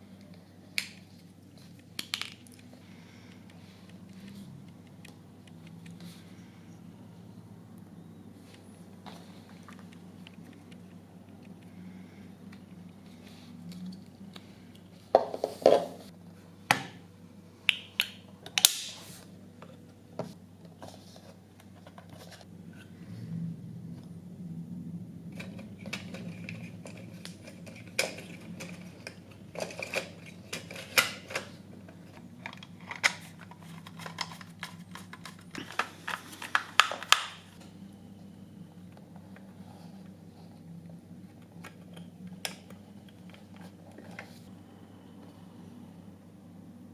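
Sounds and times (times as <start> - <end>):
low steady hum: 0.0 - 46.9
small parts clicking and clinking: 25.4 - 37.3.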